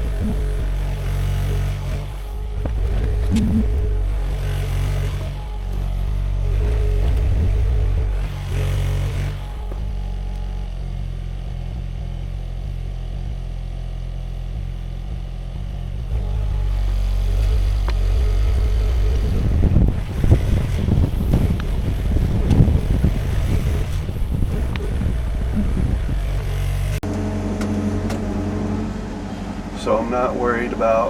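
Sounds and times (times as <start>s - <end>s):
excavator diesel engine running: 0.0s - 31.0s
scraping and clunking of digging: 19.8s - 29.9s.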